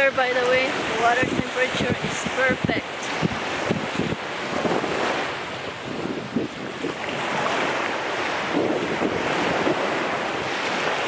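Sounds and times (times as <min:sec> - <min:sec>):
ocean waves washing ashore: 0:00.0 - 0:11.0
wind buffeting microphone: 0:00.0 - 0:11.0.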